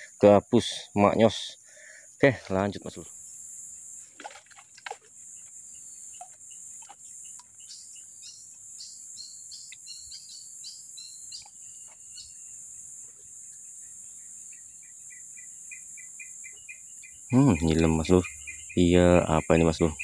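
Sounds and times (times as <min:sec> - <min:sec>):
bird chirping: 0:02.7 - 0:20.0
high-pitched insect drone: 0:05.2 - 0:20.0.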